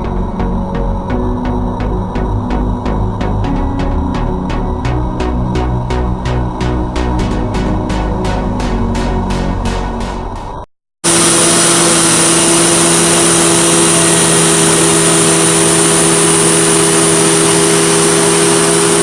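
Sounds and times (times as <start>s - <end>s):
vacuum cleaner running: 11.1s - 19.0s.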